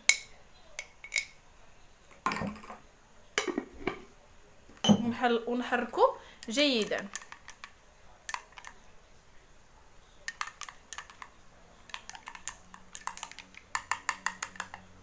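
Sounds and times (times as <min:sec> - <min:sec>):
teaspoon clinking in a glass: 0:00.1 - 0:01.4, 0:10.3 - 0:11.3, 0:11.9 - 0:14.8.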